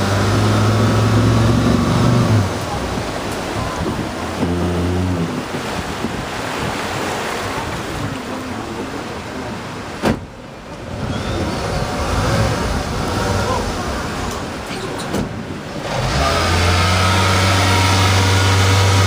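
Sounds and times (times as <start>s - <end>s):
outboard motor running: 0.0s - 6.6s, 15.6s - 19.0s
rushing water: 0.0s - 19.0s
wind: 0.0s - 19.0s.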